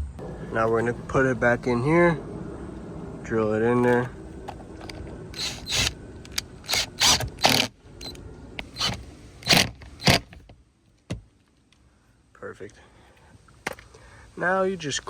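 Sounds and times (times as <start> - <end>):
cordless drill driving a screw: 5.4 - 10.3.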